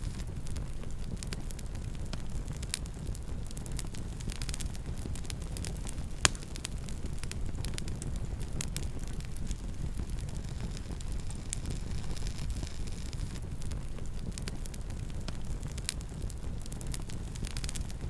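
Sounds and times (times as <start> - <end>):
campfire crackling and snapping: 0.0 - 18.0.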